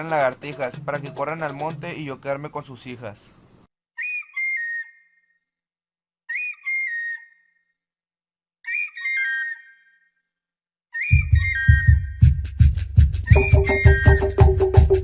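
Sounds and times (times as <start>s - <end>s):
whistle-like phrases: 4.0s - 5.5s, 6.3s - 7.8s, 8.6s - 10.1s, 10.9s - 12.2s, 13.3s - 15.0s.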